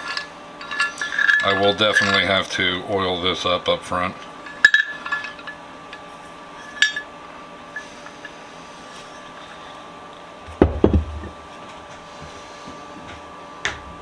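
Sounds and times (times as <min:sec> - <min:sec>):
metal vise parts clinking: 0:00.0 - 0:03.6, 0:04.2 - 0:07.1, 0:07.7 - 0:08.4.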